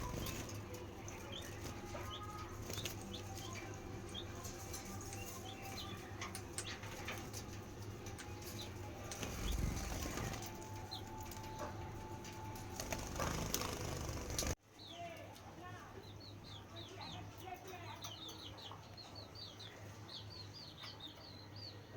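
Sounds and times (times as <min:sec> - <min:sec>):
small birds chirping: 0:00.0 - 0:21.9
bird wing flutters: 0:09.1 - 0:10.6, 0:12.7 - 0:14.6.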